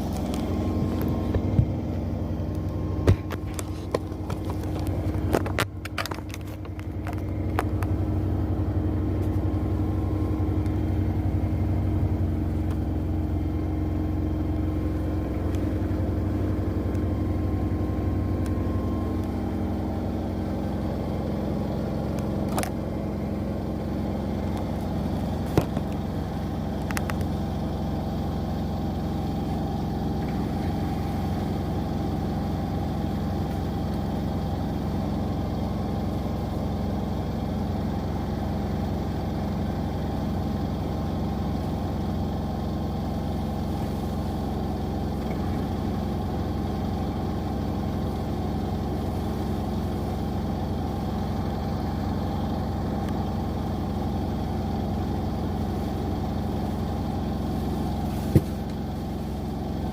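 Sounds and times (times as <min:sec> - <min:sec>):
washing machines spinning: 0:00.0 - 0:05.9.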